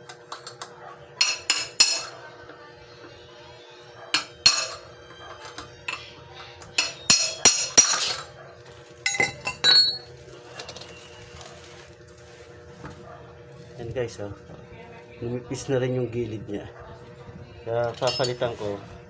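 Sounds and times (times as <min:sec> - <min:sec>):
steel parts clinking: 0:06.7 - 0:08.3, 0:09.0 - 0:11.0, 0:17.8 - 0:18.6
ringing metal clatter: 0:09.1 - 0:10.9, 0:17.9 - 0:18.5.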